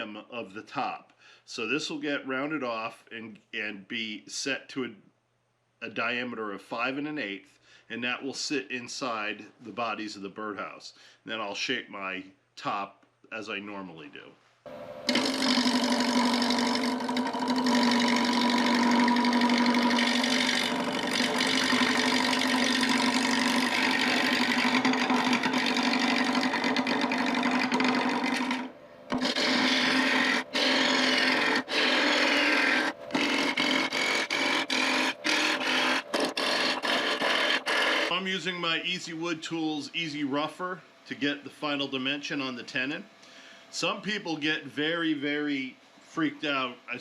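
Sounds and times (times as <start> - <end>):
wood lathe humming: 14.7 - 38.1
turning tool scraping wood: 15.1 - 38.2.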